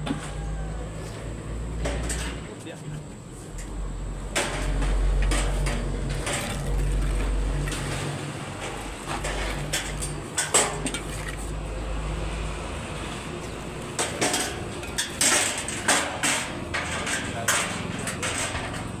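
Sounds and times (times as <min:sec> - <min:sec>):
metal clanks and knocks: 0:01.7 - 0:02.7, 0:03.5 - 0:11.7, 0:13.2 - 0:19.0.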